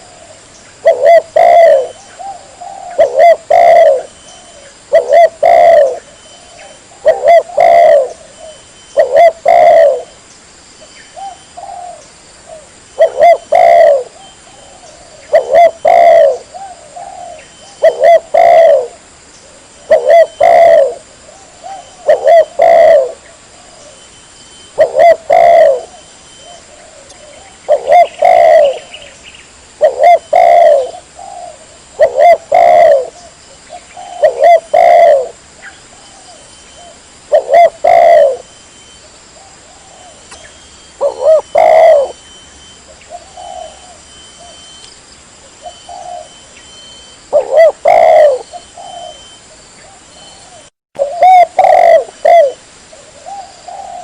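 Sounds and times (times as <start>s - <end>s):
dove cooing: 0.0s - 10.2s, 11.2s - 24.1s, 24.7s - 29.2s, 29.8s - 44.8s, 45.5s - 54.0s.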